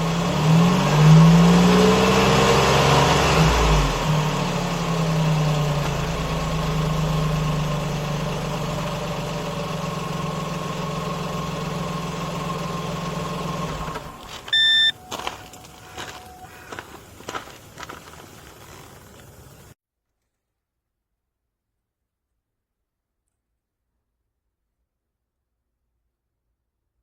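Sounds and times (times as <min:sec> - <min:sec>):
vehicle engine idling: 0:00.0 - 0:19.8
short electronic beep: 0:14.5 - 0:16.5.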